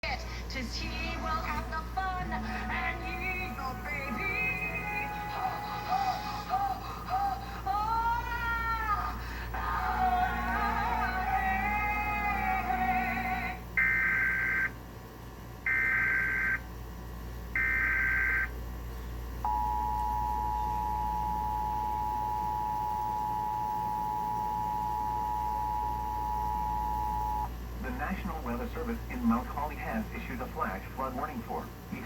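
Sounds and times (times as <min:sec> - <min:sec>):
song with singing: 0:00.1 - 0:13.6.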